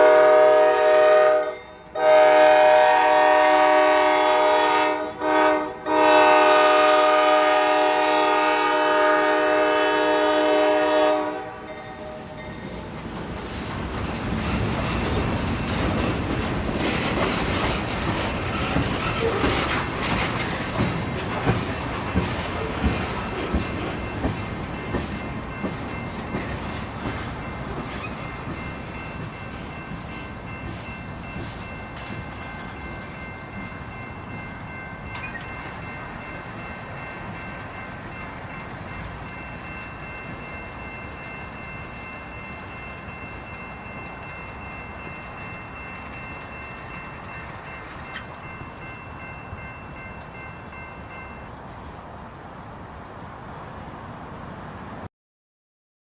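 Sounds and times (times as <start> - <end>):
freight train rolling: 0.0 - 55.1
train wheels clacking on rails: 11.9 - 51.4.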